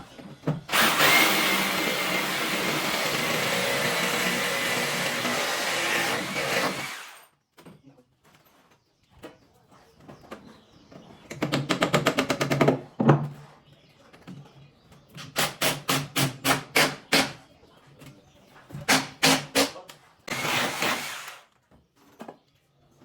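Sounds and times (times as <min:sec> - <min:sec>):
power tool running: 0:00.7 - 0:07.2, 0:20.3 - 0:21.5.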